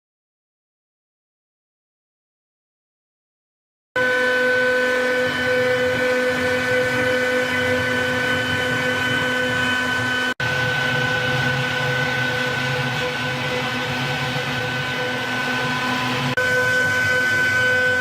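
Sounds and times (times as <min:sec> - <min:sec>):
cnc router spindle whine: 0:04.0 - 0:18.0.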